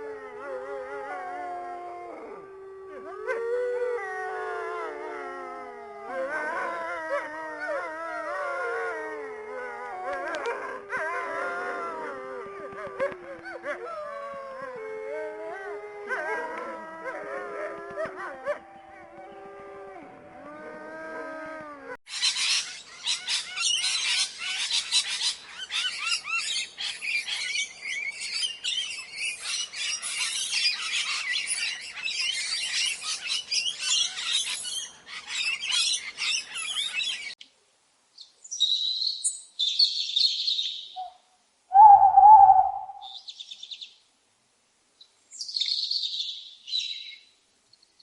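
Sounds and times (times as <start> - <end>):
drawn-out howl: 0.0 - 22.0
small birds chirping: 22.1 - 37.4, 38.2 - 44.0, 45.0 - 48.0
high bird calls: 38.6 - 43.8.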